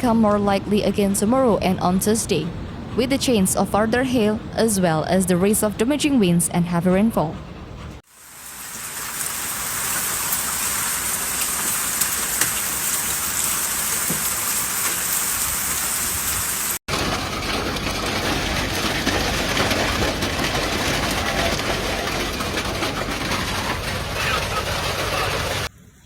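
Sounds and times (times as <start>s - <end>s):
heavy rain pouring: 8.1s - 25.7s.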